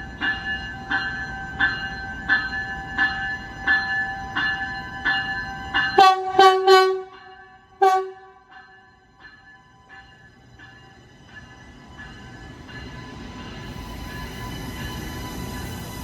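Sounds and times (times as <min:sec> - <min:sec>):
train bell ringing: 0:00.0 - 0:16.0
train horn blasts: 0:06.0 - 0:08.5.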